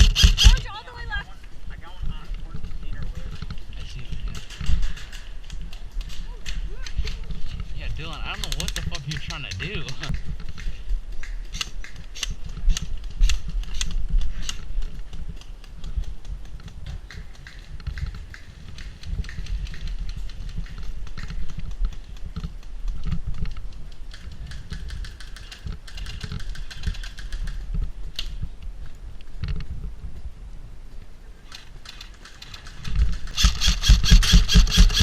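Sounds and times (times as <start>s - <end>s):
airsoft guns firing: 0.0s - 0.7s, 32.0s - 35.0s.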